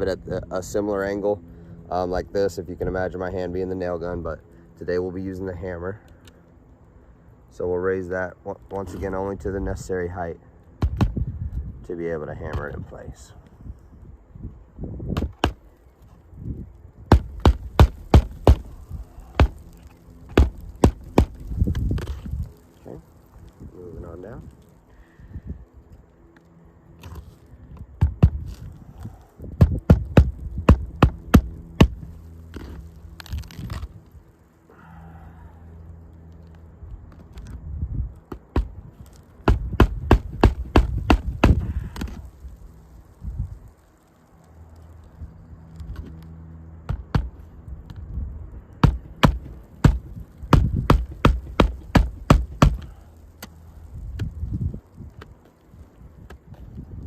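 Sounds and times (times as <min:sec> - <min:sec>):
steady low hum: 0:00.0 - 0:57.0
hammer striking nails into shingles: 0:17.1 - 0:18.7, 0:19.3 - 0:19.6, 0:20.3 - 0:21.4, 0:29.6 - 0:32.0, 0:39.4 - 0:42.1, 0:48.8 - 0:52.9.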